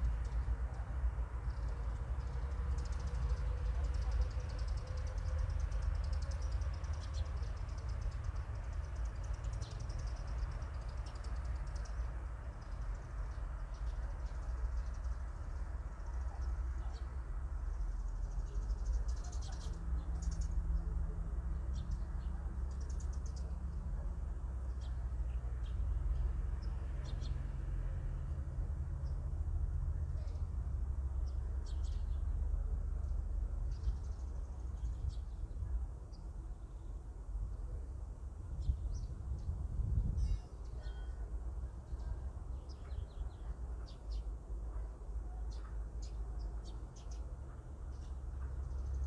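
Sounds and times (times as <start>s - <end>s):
small birds chirping: 0.0s - 27.6s, 31.2s - 37.8s, 38.5s - 49.0s
steady low rumble: 27.8s - 40.8s.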